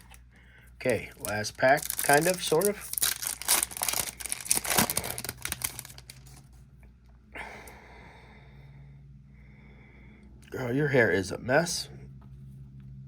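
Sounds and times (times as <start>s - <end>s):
wrapper crinkling: 0.8s - 6.6s.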